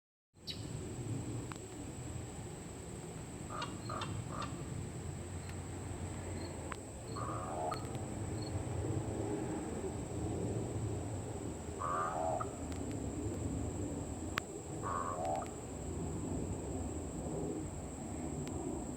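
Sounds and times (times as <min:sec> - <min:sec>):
steady high-pitched whine: 0:00.4 - 0:18.9
crow calling: 0:03.5 - 0:04.6, 0:07.2 - 0:07.9, 0:11.8 - 0:12.6, 0:14.8 - 0:15.6.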